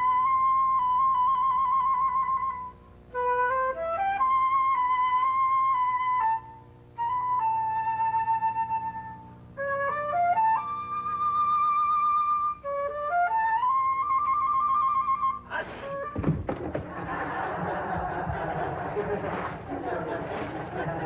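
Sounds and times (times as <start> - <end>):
solo flute melody: 0.0 - 16.2
flute player breathing: 15.4 - 16.1.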